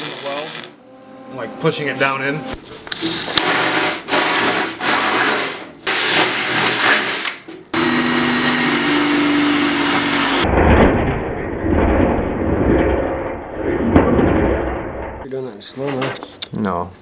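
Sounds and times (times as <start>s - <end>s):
arc welding crackling: 0.0s - 0.8s.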